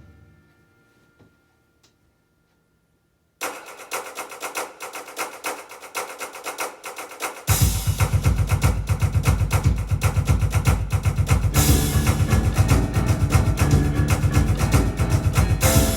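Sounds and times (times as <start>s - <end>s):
drum rhythm: 3.4s - 15.9s
heavy bass line: 7.5s - 15.9s
electronic organ rapid notes: 11.5s - 15.9s.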